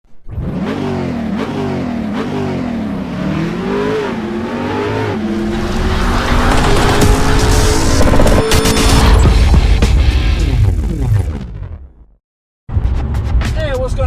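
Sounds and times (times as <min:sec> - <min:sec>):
car engine revving: 0:00.3 - 0:11.4.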